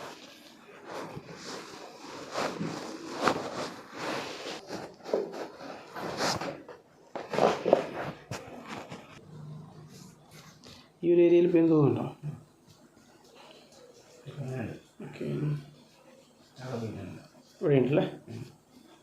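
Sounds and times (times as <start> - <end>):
hands rustling and scraping: 0.0 - 9.2.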